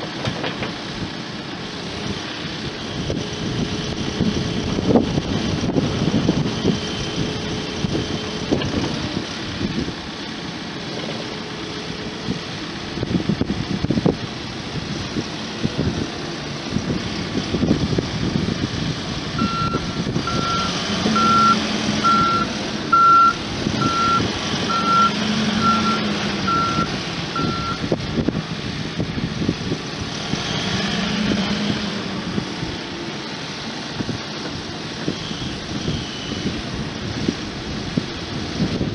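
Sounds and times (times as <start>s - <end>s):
diesel engine running: 0.0s - 38.9s
reverse alarm beeping: 19.4s - 27.8s.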